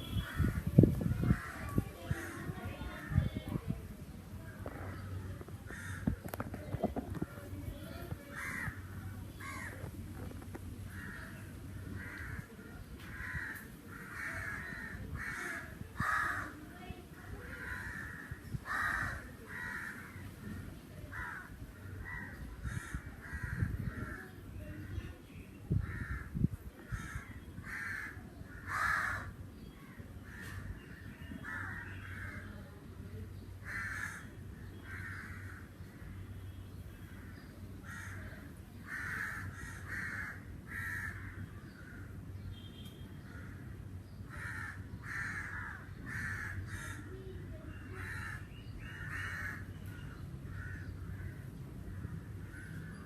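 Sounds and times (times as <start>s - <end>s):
crows cawing: 5.7s - 6.4s, 8.3s - 9.9s, 10.9s - 12.5s, 13.1s - 16.6s, 17.5s - 20.4s, 21.1s - 24.4s, 25.8s - 30.8s, 31.4s - 32.5s, 33.6s - 36.1s, 37.1s - 42.2s, 43.2s - 47.3s, 47.9s - 53.0s.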